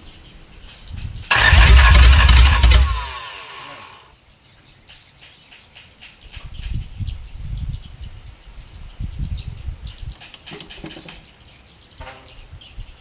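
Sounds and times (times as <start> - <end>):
starter motor cranking diesel engine: 1.3 - 4.0.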